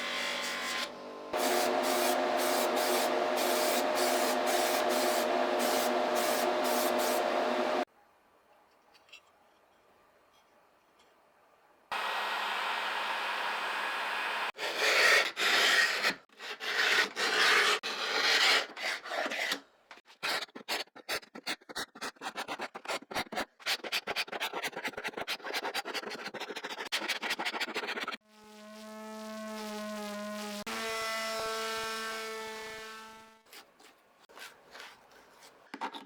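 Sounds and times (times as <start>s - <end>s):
small power tool humming: 0.0s - 7.8s, 28.3s - 33.4s.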